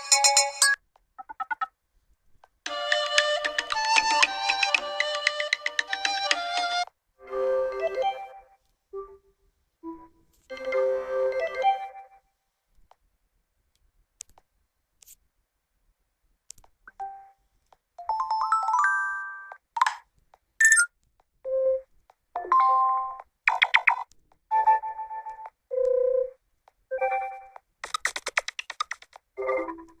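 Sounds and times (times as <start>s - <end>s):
smartphone alert jingles: 20.6s - 20.9s.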